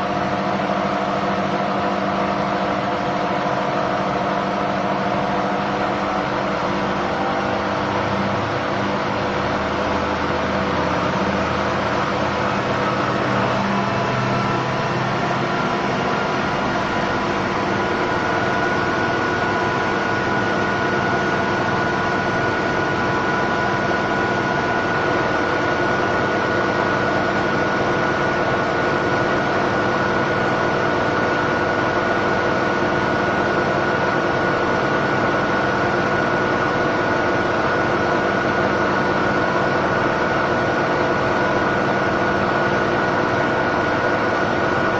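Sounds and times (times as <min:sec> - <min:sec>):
high whine: 0:00.0 - 0:26.6
washing machine spinning: 0:00.0 - 0:44.9.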